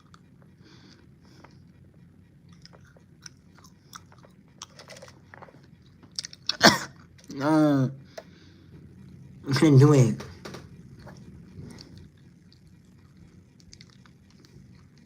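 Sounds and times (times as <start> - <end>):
person chewing: 2.5 - 7.3, 11.0 - 15.0.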